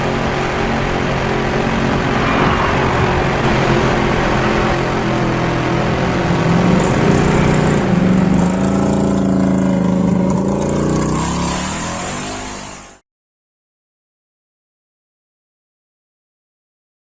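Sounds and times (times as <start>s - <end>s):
dune buggy engine running: 0.0s - 13.0s.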